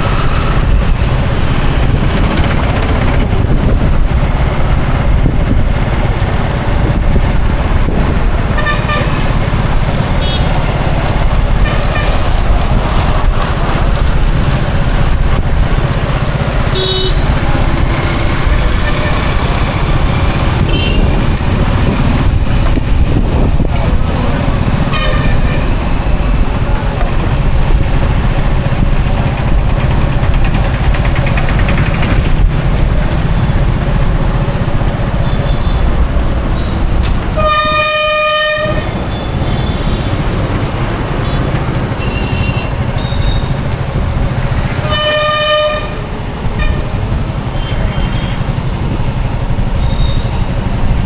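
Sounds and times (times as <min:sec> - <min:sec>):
highway traffic rumble: 0:00.0 - 0:51.0
loud vehicle horn: 0:08.5 - 0:09.4, 0:10.2 - 0:10.6, 0:11.6 - 0:12.2, 0:16.7 - 0:19.6, 0:20.6 - 0:21.3, 0:24.8 - 0:25.8, 0:35.2 - 0:40.2, 0:44.6 - 0:48.6.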